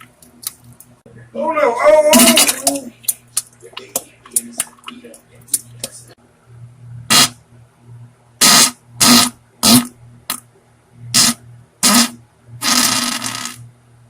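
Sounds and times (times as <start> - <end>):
loud wet farts: 2.2 - 2.8, 7.1 - 7.4, 8.4 - 9.9, 11.2 - 13.6.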